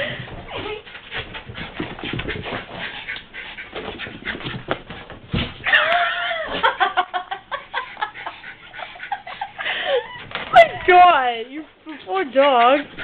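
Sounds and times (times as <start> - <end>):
dogs scuffling: 0.1 - 5.8.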